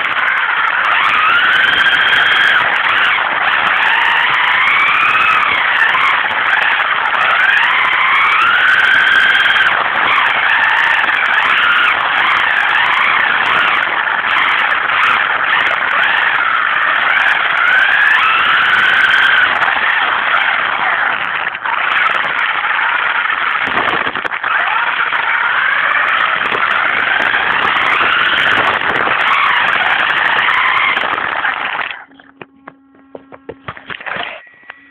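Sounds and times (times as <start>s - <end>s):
electric motor whining: 0.0s - 34.9s
faint steady tones: 0.0s - 34.9s
steady rushing noise: 0.0s - 34.9s
scattered clicks: 8.6s - 34.9s.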